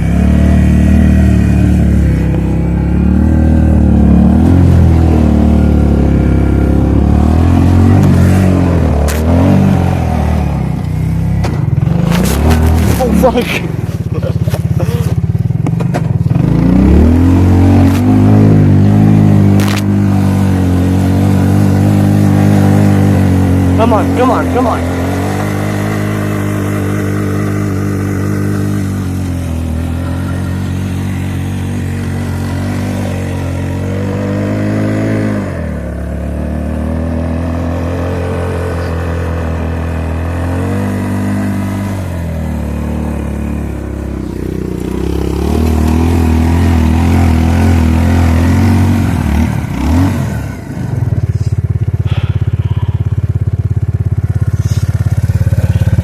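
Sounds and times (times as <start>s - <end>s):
atv engine revving under load: 0.0s - 56.0s.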